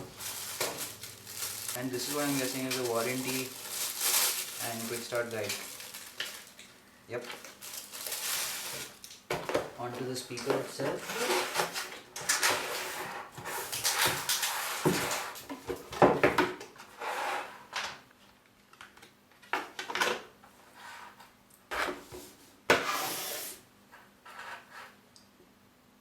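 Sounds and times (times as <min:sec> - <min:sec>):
cardboard box scraping and rubbing: 0:11.0 - 0:11.8, 0:22.8 - 0:23.6.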